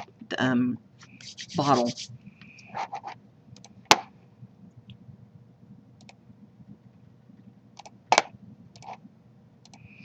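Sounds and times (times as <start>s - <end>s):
faint low hum: 0.0s - 10.0s
computer mouse clicks: 3.6s - 3.8s, 6.0s - 6.2s, 7.8s - 8.0s, 8.7s - 9.0s, 9.6s - 9.9s.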